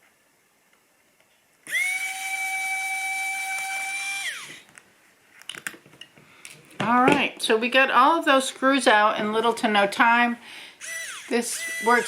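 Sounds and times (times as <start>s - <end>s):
electric screwdriver motor whining: 1.7s - 4.6s, 10.8s - 12.0s.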